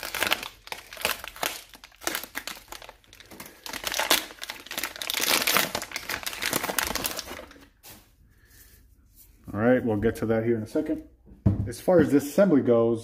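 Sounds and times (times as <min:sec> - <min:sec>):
packaging crinkling and rustling: 0:00.0 - 0:07.9.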